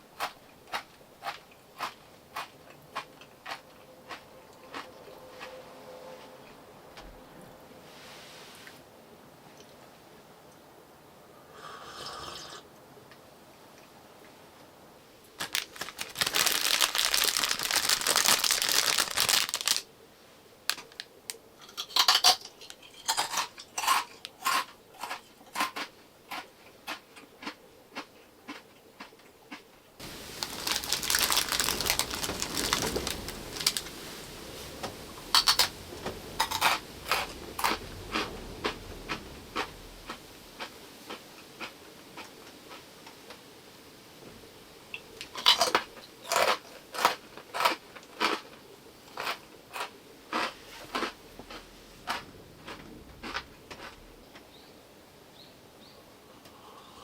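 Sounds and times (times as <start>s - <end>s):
dense rustling noise: 15.2s - 21.0s, 30.0s - 41.6s, 50.4s - 54.5s.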